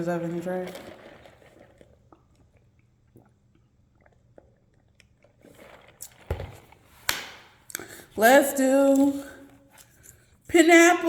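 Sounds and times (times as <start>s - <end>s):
wet mouth clicks: 7.7s - 8.0s.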